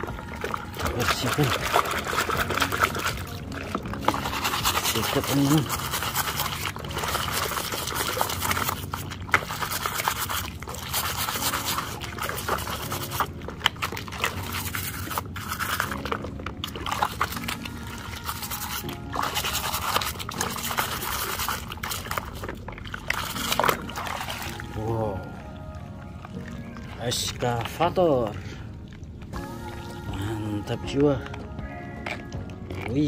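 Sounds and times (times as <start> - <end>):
background music: 0.0 - 33.0
water dripping and splashing: 0.0 - 33.0
brush scrubbing plastic toy: 0.7 - 24.6.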